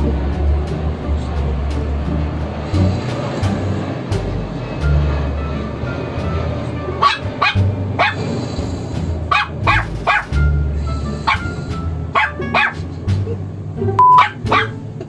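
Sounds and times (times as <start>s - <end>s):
dog barking: 7.0s - 8.3s, 9.3s - 10.4s, 11.3s - 12.9s, 14.1s - 14.8s.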